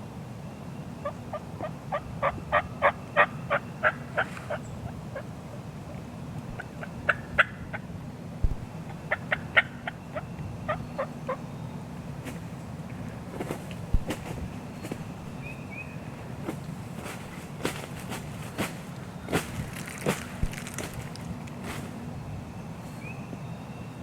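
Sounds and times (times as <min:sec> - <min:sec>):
wild turkey yelping: 0:01.0 - 0:07.9, 0:08.8 - 0:11.6.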